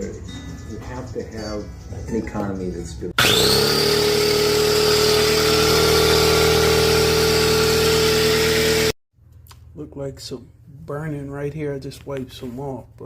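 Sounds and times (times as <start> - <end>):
air compressor running: 3.2 - 9.0.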